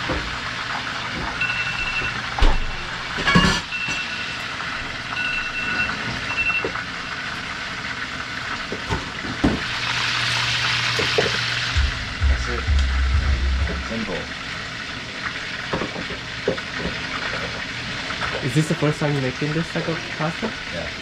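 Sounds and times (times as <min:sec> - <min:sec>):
steady cooking hiss: 0:00.0 - 0:03.2, 0:03.9 - 0:12.7, 0:13.9 - 0:21.0
utensils clinking on cookware: 0:03.1 - 0:04.1
low hum: 0:11.4 - 0:14.4.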